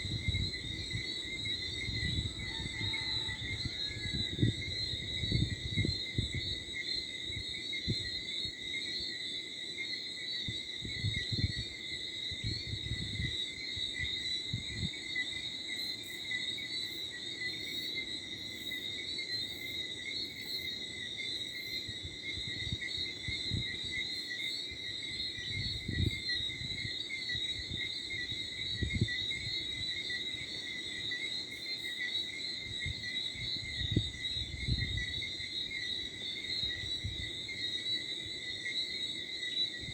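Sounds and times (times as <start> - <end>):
wind on microphone: 0.0 - 8.6, 10.4 - 15.1, 21.8 - 24.1, 24.7 - 30.0, 32.6 - 35.8, 36.6 - 37.5
crickets and frogs chorus: 0.0 - 39.9.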